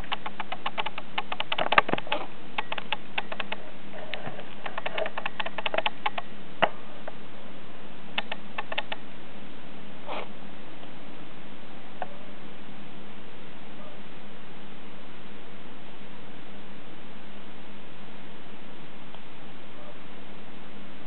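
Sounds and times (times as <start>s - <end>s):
bird wheezing clicks and rasps: 0.0s - 6.3s, 8.2s - 9.0s.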